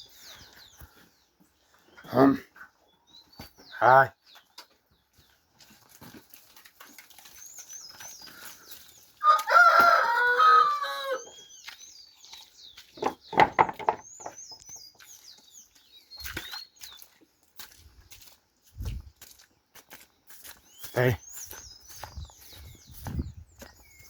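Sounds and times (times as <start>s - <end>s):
small birds chirping: 0.0s - 24.0s
rooster crowing: 9.2s - 11.4s.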